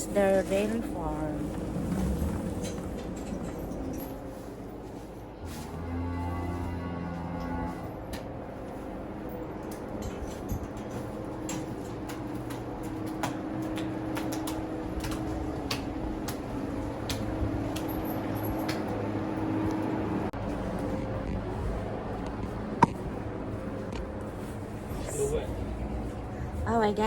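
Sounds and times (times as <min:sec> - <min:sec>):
steady mechanical hum: 0:00.0 - 0:27.0.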